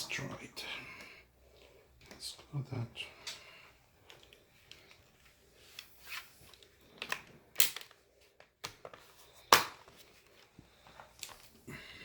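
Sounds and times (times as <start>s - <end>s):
clicks and knocks of plastic parts: 6.5s - 10.0s.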